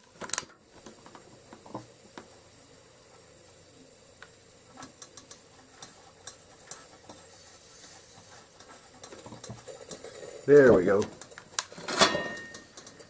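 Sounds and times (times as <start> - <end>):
small clicks and ticks: 4.2 - 7.2, 8.4 - 11.8, 12.4 - 13.0.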